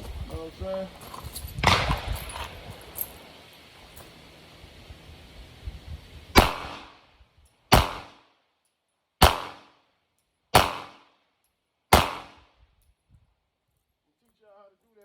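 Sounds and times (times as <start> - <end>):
pistol shots with echo: 6.4 - 6.9, 7.7 - 8.2, 9.2 - 9.7, 10.5 - 11.1, 11.9 - 12.4.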